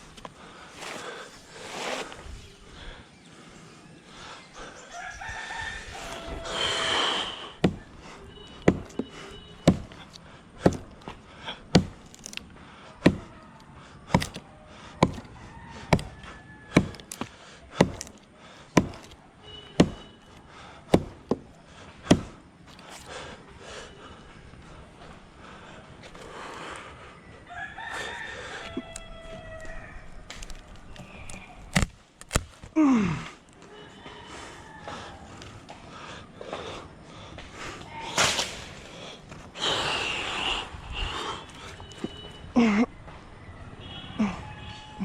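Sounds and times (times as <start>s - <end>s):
rooster crowing: 4.8s - 9.4s, 14.5s - 17.3s, 27.2s - 31.5s, 33.6s - 35.7s, 41.4s - 45.0s
blade chopping wood: 7.6s - 13.4s, 14.0s - 23.1s, 30.2s - 32.7s, 38.2s - 38.8s.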